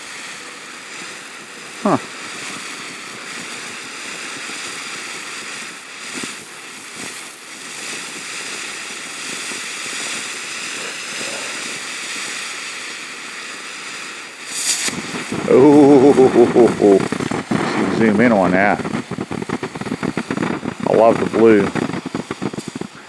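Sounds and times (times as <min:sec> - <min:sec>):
firework fountain hissing: 0:00.0 - 0:23.0
brief pops: 0:18.7 - 0:23.0.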